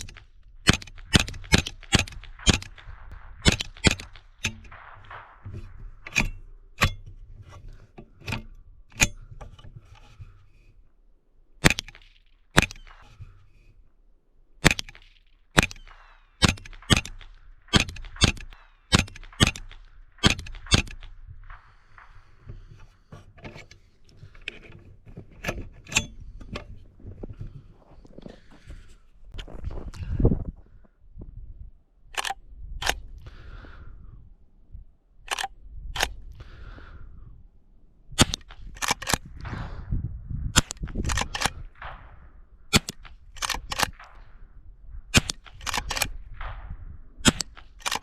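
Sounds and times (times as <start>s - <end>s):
rifle shots cracking: 0.0s - 6.9s, 14.6s - 22.4s.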